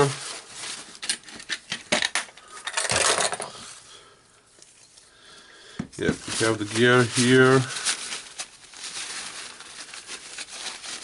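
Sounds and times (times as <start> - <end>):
rattling scrape: 2.7 - 3.6.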